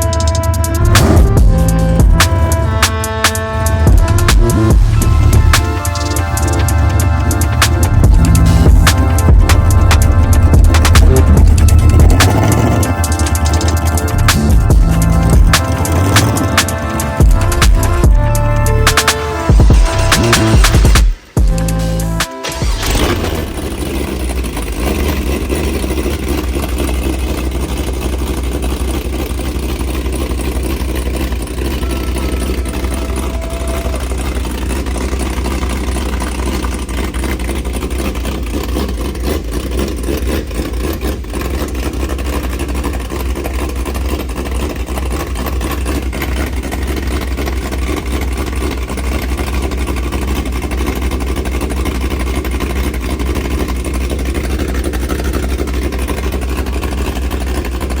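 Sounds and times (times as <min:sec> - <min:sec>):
car engine running: 0:00.0 - 0:58.0.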